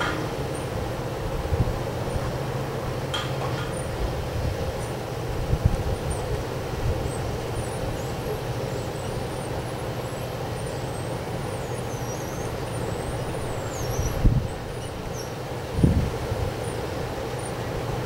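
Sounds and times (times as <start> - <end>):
strong wind buffeting microphone: 0.0 - 8.0, 13.1 - 16.6.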